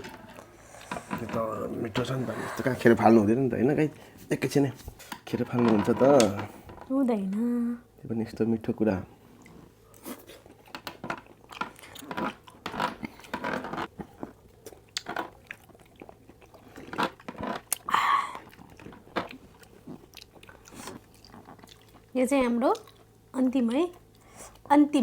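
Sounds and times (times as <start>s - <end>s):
person chewing wetly: 9.4s - 22.1s, 22.7s - 23.2s.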